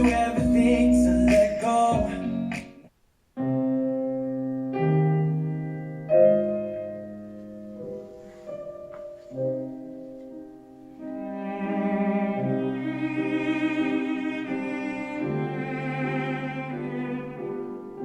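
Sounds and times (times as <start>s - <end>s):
slow solo piano music: 3.4s - 13.4s.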